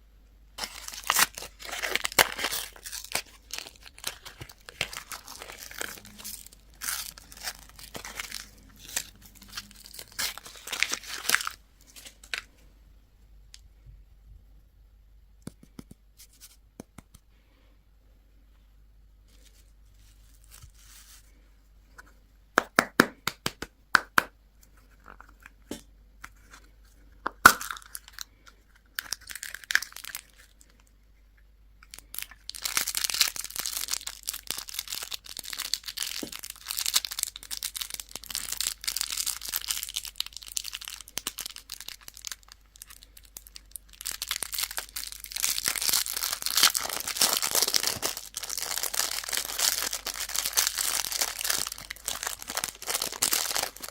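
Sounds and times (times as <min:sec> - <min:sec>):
wrapper crinkling and tearing: 0:00.6 - 0:12.5, 0:27.4 - 0:30.8, 0:31.8 - 0:53.9.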